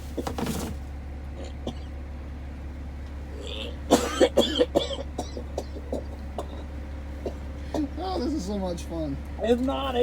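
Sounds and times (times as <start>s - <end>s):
person coughing: 3.9s - 6.6s.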